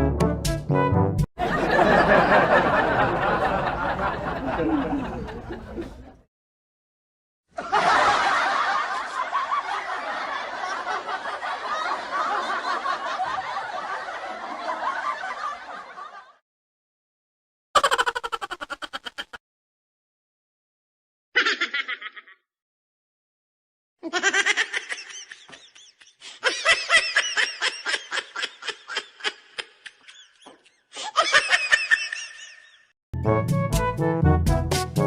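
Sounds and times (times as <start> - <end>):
laughter sound effect: 1.4 - 6.2, 7.6 - 16.4, 17.8 - 19.4, 21.4 - 22.4, 24.0 - 32.9.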